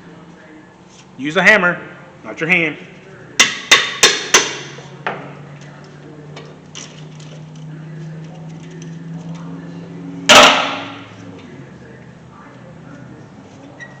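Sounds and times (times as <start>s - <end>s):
hammer striking metal wrench: 3.4s - 4.8s.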